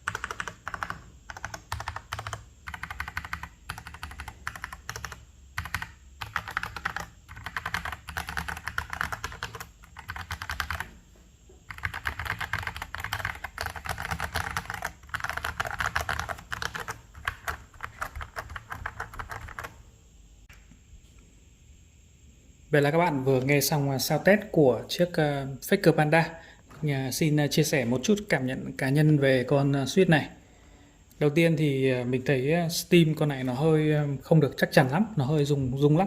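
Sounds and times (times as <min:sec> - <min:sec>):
fast mechanical keyboard typing: 0:00.0 - 0:10.9, 0:11.7 - 0:19.8.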